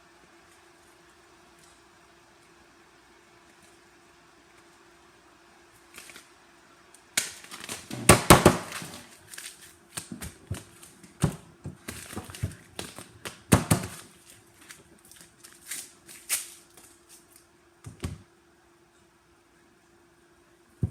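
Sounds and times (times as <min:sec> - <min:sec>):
faint steady hum: 0:00.0 - 0:20.9
paper rustling and crinkling: 0:07.3 - 0:17.4.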